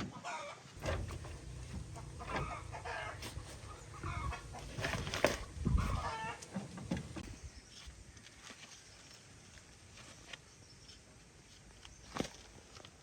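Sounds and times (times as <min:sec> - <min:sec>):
chickens clucking: 0:00.8 - 0:07.2.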